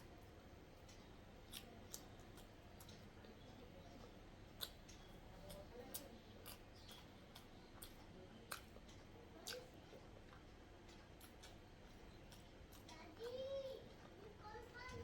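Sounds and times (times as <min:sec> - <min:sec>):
wet mouth chewing clicks: 0:01.5 - 0:03.0, 0:04.6 - 0:13.0.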